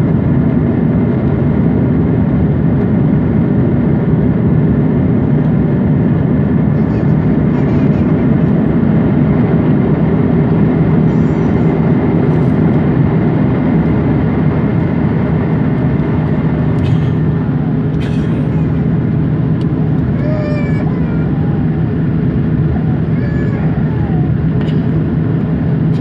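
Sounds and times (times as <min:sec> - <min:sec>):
jet engines roaring in flight: 0:00.0 - 0:26.0.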